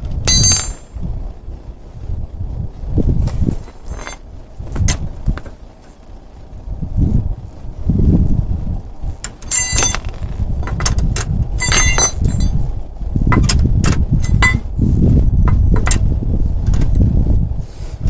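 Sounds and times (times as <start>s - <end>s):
metal parts clanking: 0.0s - 1.0s, 3.6s - 4.3s, 9.2s - 12.6s, 13.3s - 14.7s, 15.5s - 16.0s
wind on microphone: 0.0s - 18.0s.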